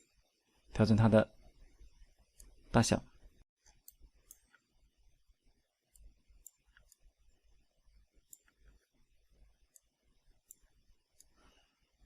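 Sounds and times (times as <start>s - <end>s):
computer mouse clicks: 8.2s - 8.8s.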